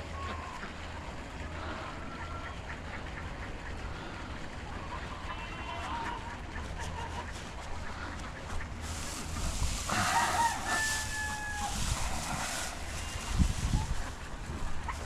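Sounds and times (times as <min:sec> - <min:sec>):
rooster crowing: 0:09.9 - 0:13.0.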